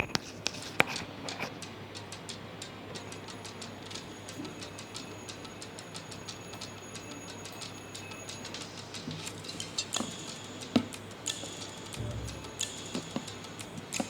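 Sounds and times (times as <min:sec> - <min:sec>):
tinny music from earphones: 0:02.9 - 0:14.0.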